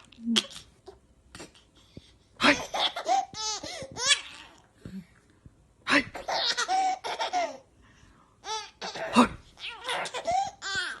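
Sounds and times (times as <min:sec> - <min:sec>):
baby laughing: 0:02.4 - 0:04.6, 0:06.1 - 0:07.7, 0:08.4 - 0:11.0.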